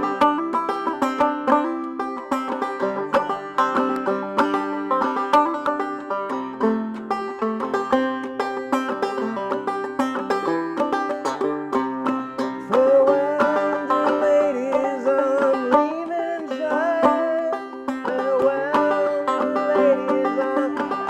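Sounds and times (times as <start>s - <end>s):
clawhammer banjo playing: 0.0s - 21.0s
person singing slow melody: 18.1s - 21.0s.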